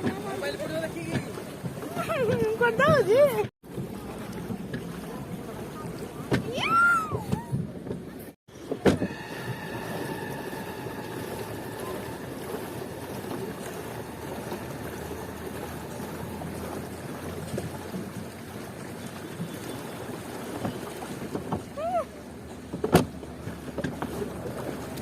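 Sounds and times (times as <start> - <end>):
loud high squeal: 9.0 - 13.1.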